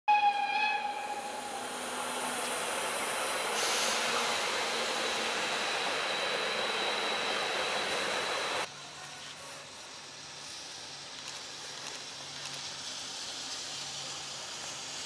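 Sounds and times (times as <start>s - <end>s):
high ringing tone: 0.1s - 8.7s
steam locomotive hiss: 0.8s - 8.8s, 9.4s - 15.0s.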